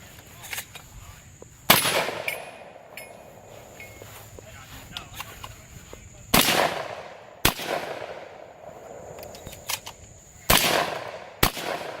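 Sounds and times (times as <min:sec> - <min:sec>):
shotgun shots with echo: 0:01.7 - 0:02.9, 0:06.3 - 0:09.1, 0:10.5 - 0:12.0.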